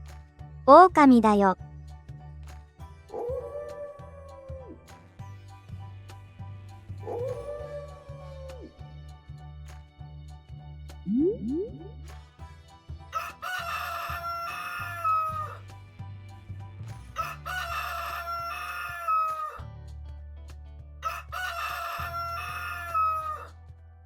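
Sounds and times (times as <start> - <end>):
rooster crowing: 13.2 - 15.6, 17.2 - 19.6, 21.0 - 23.5.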